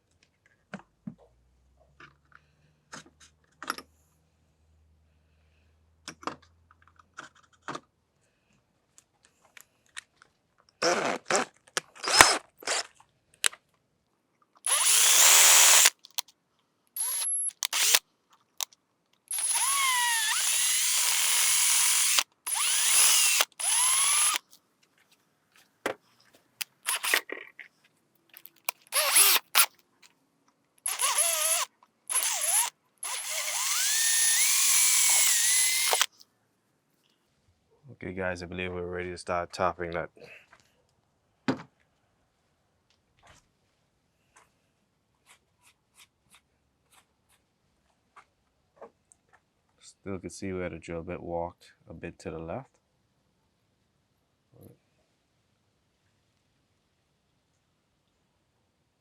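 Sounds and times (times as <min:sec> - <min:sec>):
power drill running in bursts: 0:14.7 - 0:16.0, 0:17.0 - 0:18.0, 0:19.3 - 0:24.4, 0:26.9 - 0:27.2, 0:28.7 - 0:29.7, 0:30.9 - 0:36.1.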